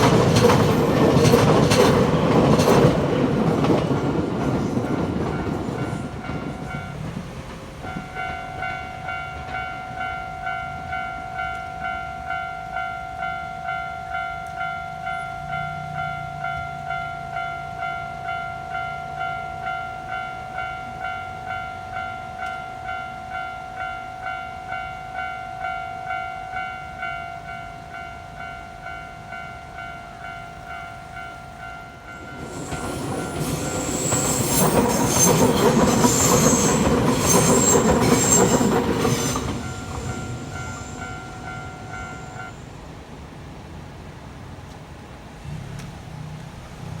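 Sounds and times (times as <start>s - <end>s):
train wheels clattering over rails: 0.0s - 9.8s, 32.2s - 42.6s
level-crossing warning bell: 0.0s - 43.0s.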